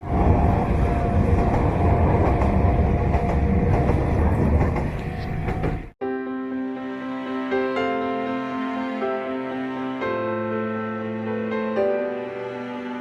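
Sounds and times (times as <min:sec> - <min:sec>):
electric train wheels rumbling: 0:00.0 - 0:06.0.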